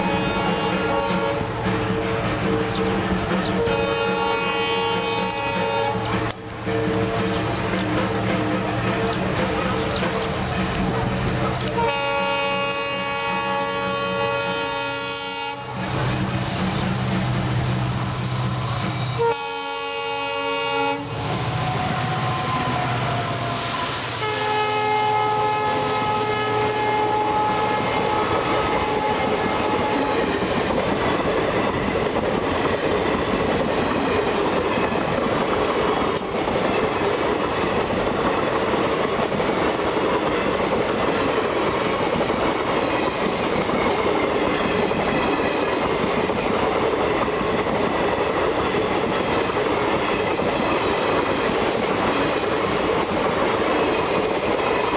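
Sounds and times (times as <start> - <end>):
train horn blasts: 0.0 - 16.2, 18.0 - 30.4
train wheels rumbling over rail joints: 0.0 - 54.9.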